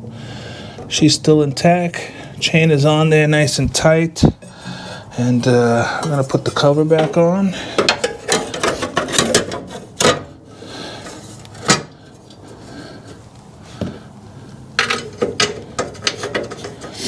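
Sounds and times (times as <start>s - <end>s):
metal cover knocking and clanking: 6.0s - 10.4s, 11.6s - 12.0s, 14.8s - 17.0s.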